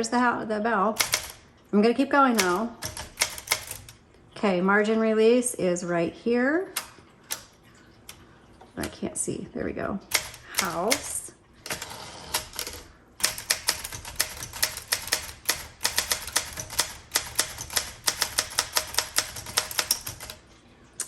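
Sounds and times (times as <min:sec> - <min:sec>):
manual typewriter keys clacking: 0:01.0 - 0:01.4, 0:02.2 - 0:04.0, 0:10.1 - 0:20.4.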